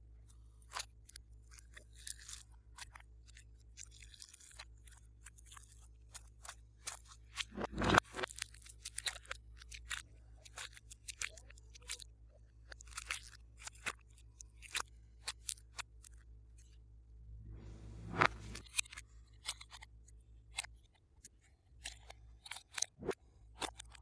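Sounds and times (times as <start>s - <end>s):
slime squelching by hand: 0.2s - 16.7s.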